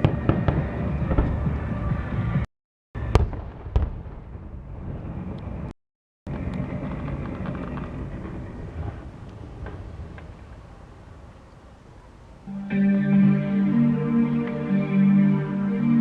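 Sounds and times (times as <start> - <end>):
fireworks bangs: 0.0 - 2.3, 3.0 - 5.4
fireworks rumble and crackle: 0.0 - 2.4, 3.0 - 5.7, 6.3 - 12.3.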